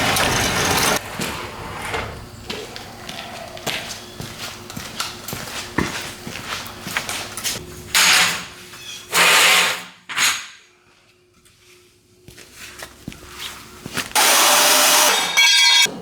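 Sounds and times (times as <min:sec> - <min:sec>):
power drill bursts: 0:14.2 - 0:15.9.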